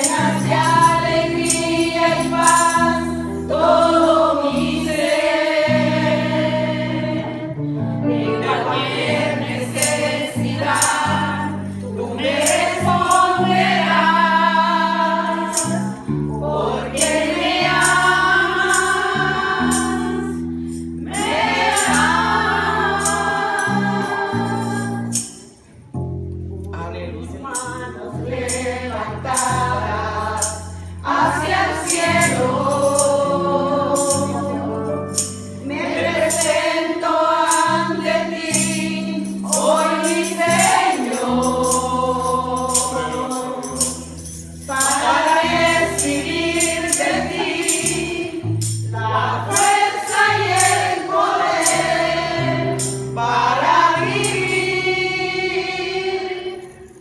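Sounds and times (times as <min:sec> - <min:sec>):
tambourine shaken and struck: 0:00.0 - 0:07.4, 0:08.4 - 0:25.8, 0:27.6 - 0:57.0
group of voices singing: 0:00.0 - 0:25.4, 0:27.8 - 0:57.0
sustained bass notes: 0:00.0 - 0:39.8.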